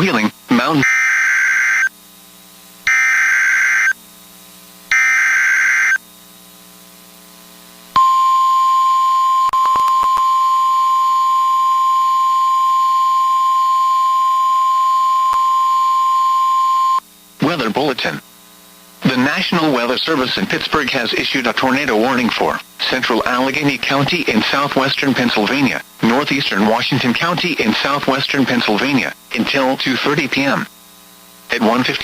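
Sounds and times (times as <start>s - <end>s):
buzzy data screech: 0.6s - 2.0s, 2.8s - 4.0s, 4.9s - 6.0s
steady warning alarm tone: 0.8s - 2.0s, 2.8s - 4.0s, 4.9s - 6.0s, 8.0s - 17.0s
static clicks: 9.5s - 10.4s, 15.0s - 15.5s.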